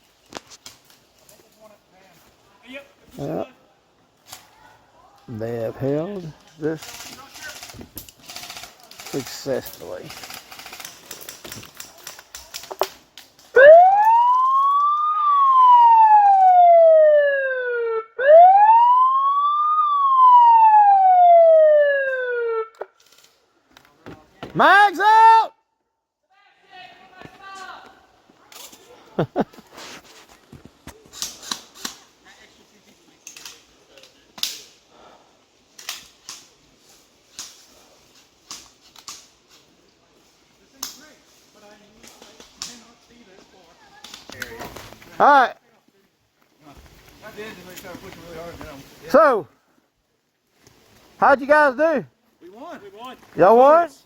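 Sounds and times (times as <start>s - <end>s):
siren wailing: 13.6s - 22.8s.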